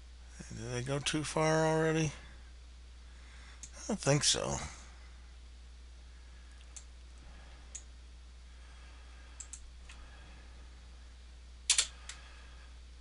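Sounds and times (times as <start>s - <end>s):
computer mouse and keyboard clicks: 9.4s - 10.0s, 11.7s - 12.2s.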